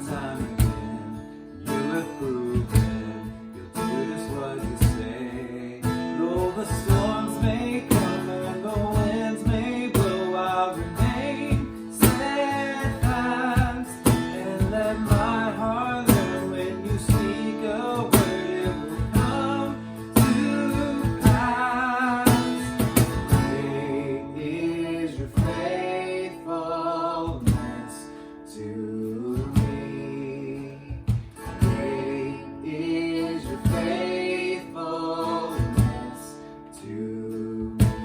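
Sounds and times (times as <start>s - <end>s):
person singing: 0.0s - 38.0s
strummed acoustic guitar: 0.0s - 38.0s
steady beat: 6.4s - 23.8s.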